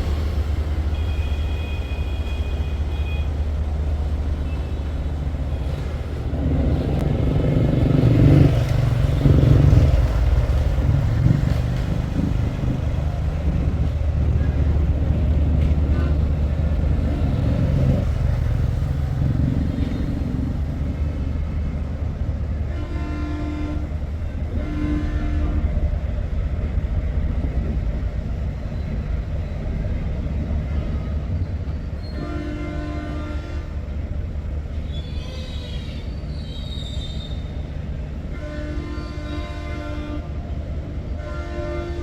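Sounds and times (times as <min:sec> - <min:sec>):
diesel locomotive engine rumble: 0:00.0 - 0:42.0
train horn blasts: 0:00.1 - 0:03.5, 0:21.8 - 0:26.2, 0:30.4 - 0:34.2, 0:35.0 - 0:36.1, 0:37.0 - 0:42.0.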